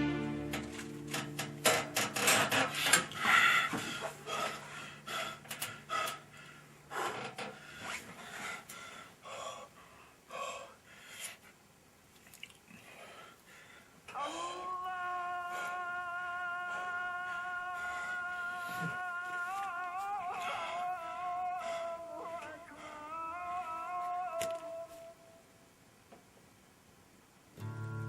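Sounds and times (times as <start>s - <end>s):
sustained musical note: 0.0s - 1.6s, 27.6s - 28.0s
gasping panting breaths: 2.7s - 11.6s, 20.3s - 23.1s.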